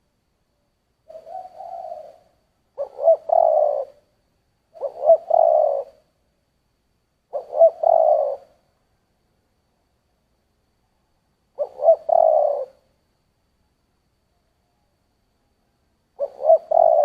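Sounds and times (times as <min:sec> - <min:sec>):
dove cooing: 0:01.1 - 0:04.1, 0:04.7 - 0:06.1, 0:07.3 - 0:08.6, 0:11.6 - 0:12.9, 0:16.2 - 0:17.0.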